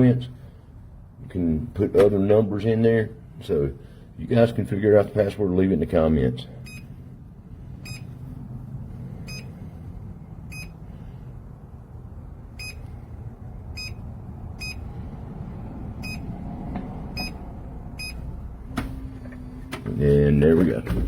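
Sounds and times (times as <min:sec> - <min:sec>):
low background rumble: 0:00.0 - 0:21.0
keypad beeps: 0:07.8 - 0:08.1, 0:10.5 - 0:10.8, 0:12.6 - 0:12.8, 0:13.8 - 0:14.0, 0:14.6 - 0:14.8, 0:16.0 - 0:16.3, 0:17.2 - 0:17.4, 0:18.0 - 0:18.2.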